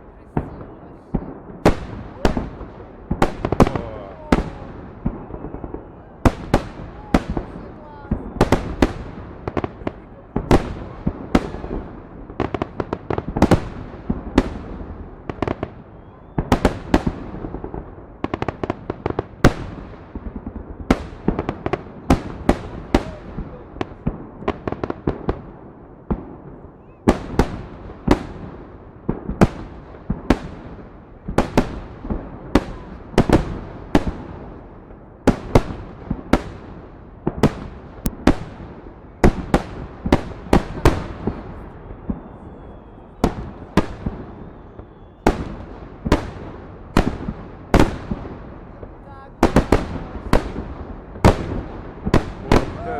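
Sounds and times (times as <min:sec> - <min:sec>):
firework bangs with rumbling echo: 0:00.0 - 0:52.9.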